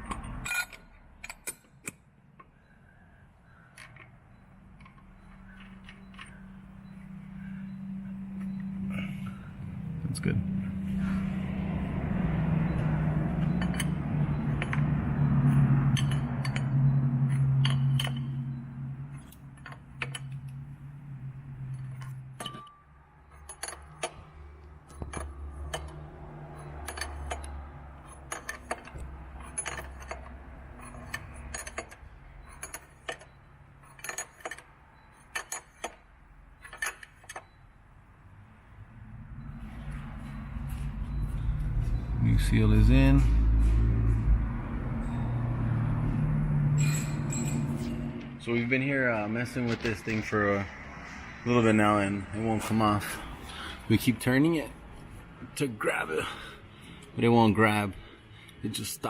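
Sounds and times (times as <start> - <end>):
metal tools clinking on metal: 0.0 - 2.0, 13.4 - 20.6, 21.7 - 24.2, 24.9 - 37.6, 46.7 - 48.0.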